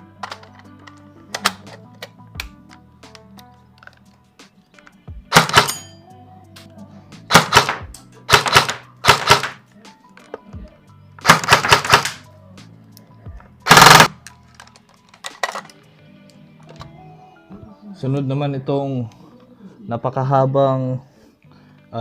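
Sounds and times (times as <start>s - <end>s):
background music: 0.0s - 22.0s
airsoft rifle firing bursts: 5.3s - 5.8s, 7.3s - 9.6s, 11.2s - 12.2s, 13.7s - 14.2s.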